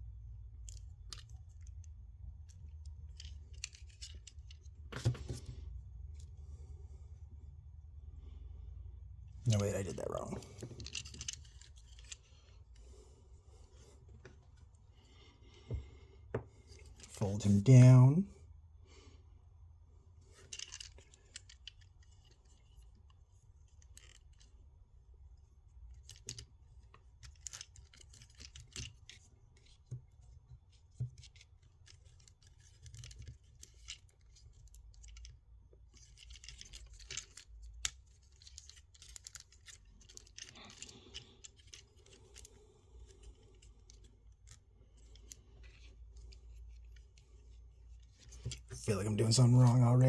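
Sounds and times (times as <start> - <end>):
plastic action figure clicks and scrapes: 0.6 - 5.6, 9.5 - 14.7, 20.2 - 24.6, 25.9 - 49.9.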